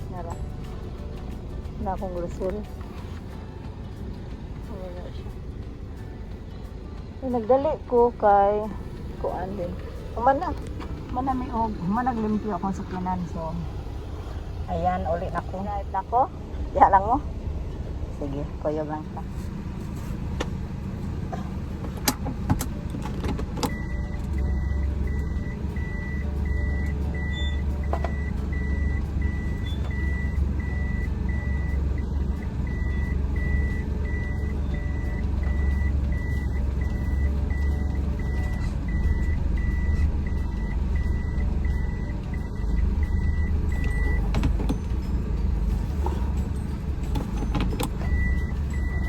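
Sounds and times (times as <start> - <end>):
car engine rumble: 0.0 - 49.0
car warning beeper: 23.6 - 44.9, 47.4 - 49.0.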